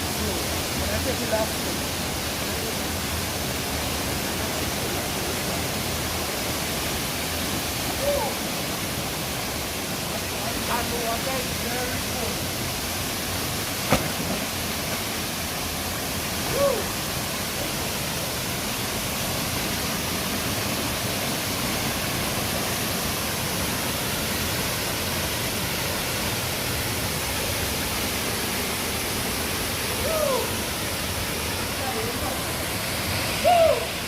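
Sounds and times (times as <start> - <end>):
waterfall rushing: 0.0 - 34.0
short call: 33.4 - 34.0.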